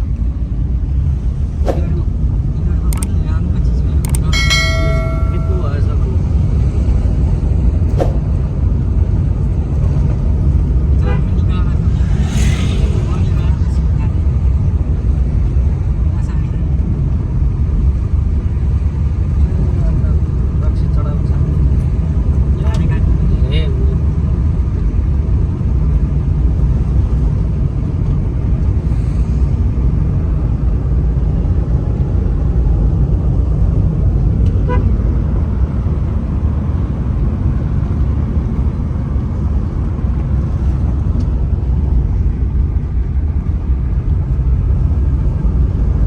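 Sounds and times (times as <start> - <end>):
road vehicle rumble: 0.0 - 46.0
faint short tone: 4.3 - 5.9.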